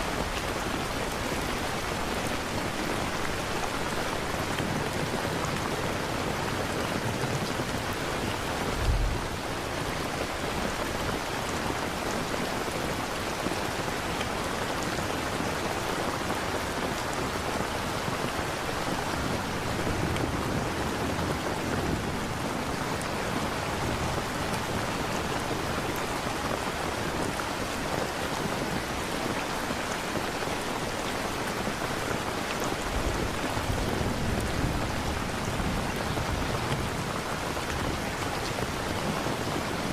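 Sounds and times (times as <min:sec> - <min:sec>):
steady rain: 0:00.0 - 0:39.9
low rumble of thunder: 0:07.7 - 0:09.9
thunderclap: 0:08.6 - 0:09.6.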